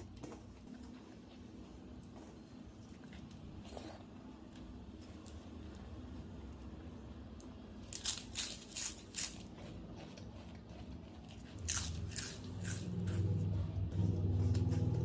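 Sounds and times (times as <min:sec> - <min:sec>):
low steady hum: 0:00.0 - 0:15.0
crunching crisp food: 0:07.4 - 0:13.5.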